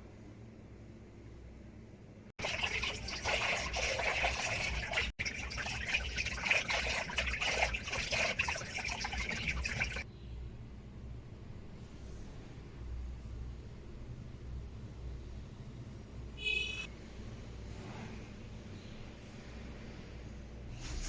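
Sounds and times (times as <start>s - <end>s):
water running and trickling: 2.4s - 10.0s.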